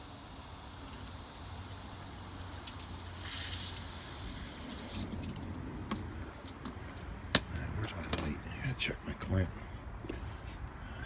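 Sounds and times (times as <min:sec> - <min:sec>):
water running and splashing: 0:00.0 - 0:07.4.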